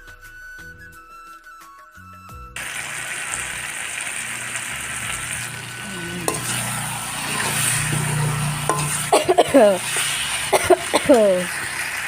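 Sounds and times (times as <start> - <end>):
flute music: 0.0 - 3.8
food sizzling in hot oil: 2.6 - 12.0
spoon scraping pan: 5.0 - 12.0.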